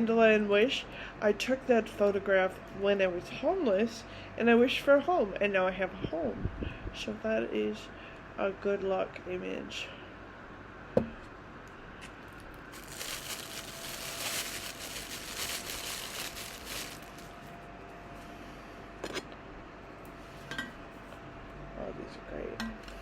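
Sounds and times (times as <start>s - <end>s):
packaging crinkling: 12.0s - 17.6s.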